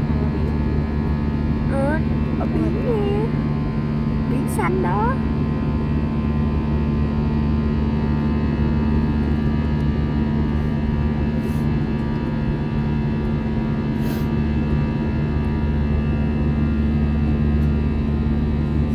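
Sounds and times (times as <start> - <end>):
jet engines droning in cabin: 0.0 - 18.9
short hisses: 14.0 - 14.3.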